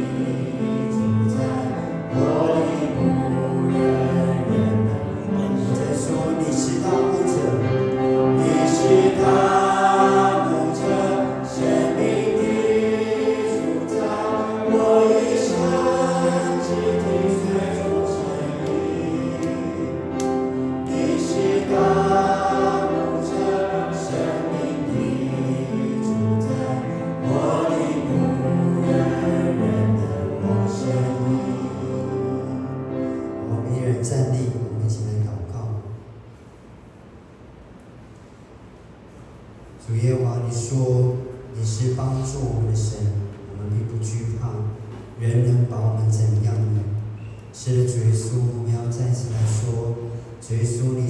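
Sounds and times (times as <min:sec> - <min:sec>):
musical accompaniment: 0:00.0 - 0:34.0
congregation singing a hymn: 0:00.0 - 0:34.6, 0:40.4 - 0:51.0.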